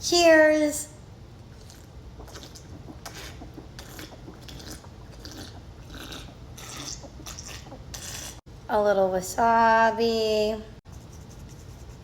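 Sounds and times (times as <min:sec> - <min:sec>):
chewing and biting food: 0:01.5 - 0:08.4.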